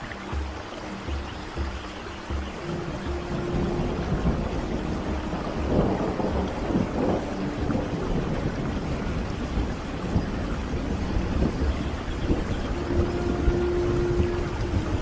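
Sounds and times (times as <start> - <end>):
steady rain: 0.0 - 15.0
thunder rumbling: 2.6 - 15.0.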